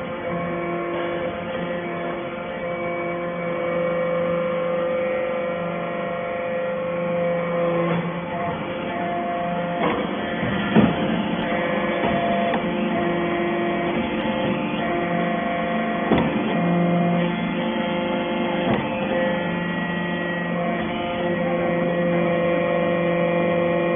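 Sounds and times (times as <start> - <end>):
hydraulic baler hum: 0.0 - 23.9
sharp metallic knocks: 9.8 - 12.7.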